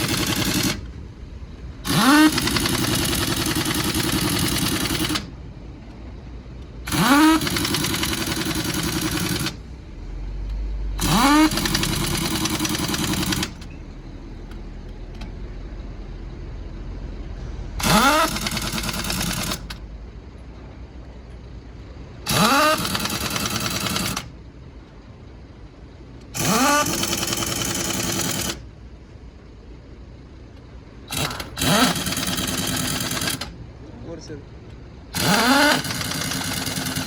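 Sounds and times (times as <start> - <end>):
pneumatic impact wrench whining: 0.0 - 0.9, 1.8 - 5.3, 6.8 - 9.6, 11.0 - 13.8, 17.8 - 19.8, 22.2 - 24.3, 26.3 - 28.7, 31.1 - 33.6, 35.1 - 37.0
steady mechanical hum: 0.0 - 37.0.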